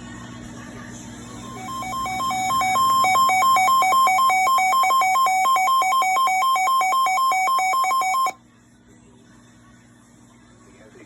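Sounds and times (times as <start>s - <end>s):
electronic two-pitch alert signal: 1.5s - 8.4s.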